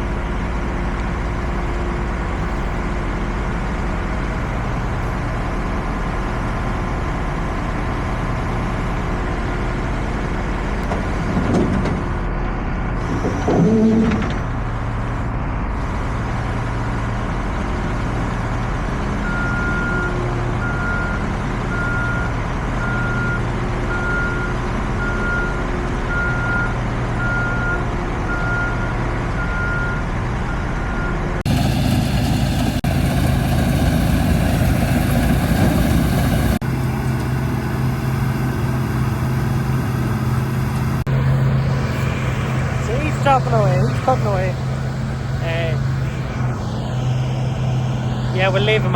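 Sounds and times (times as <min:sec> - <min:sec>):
diesel machinery running: 0:00.0 - 0:48.9
reversing alarm beeping: 0:19.2 - 0:31.3
loud noisy machine: 0:41.0 - 0:48.9.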